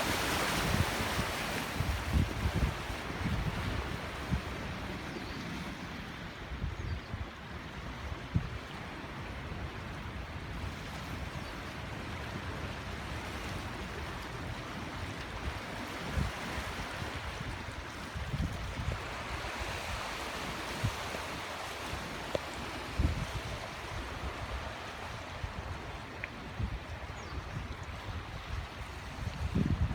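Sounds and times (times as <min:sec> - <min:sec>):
flooded river rushing: 0:00.0 - 0:02.1.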